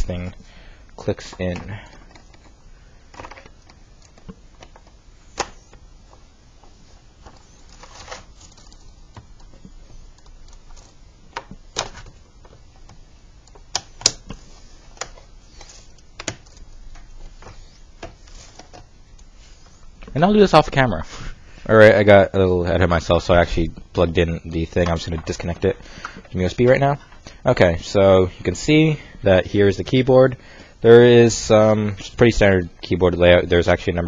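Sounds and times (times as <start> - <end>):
plastic rustling: 1.0 - 21.3
plastic clicks and knocks: 8.5 - 15.3, 16.1 - 18.9.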